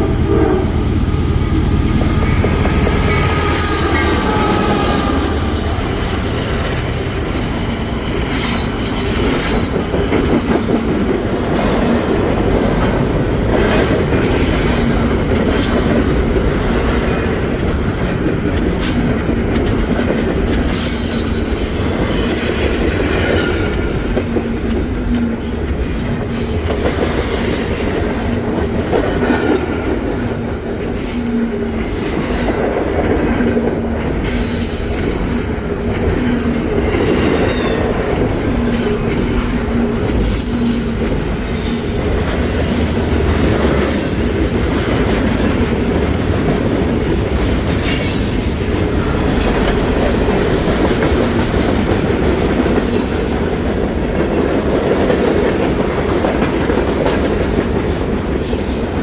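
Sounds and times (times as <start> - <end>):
freight train rumble: 0.0 - 59.0
wheels clicking on rails: 0.8 - 59.0
high wheel squeals: 1.8 - 9.7, 34.2 - 46.0.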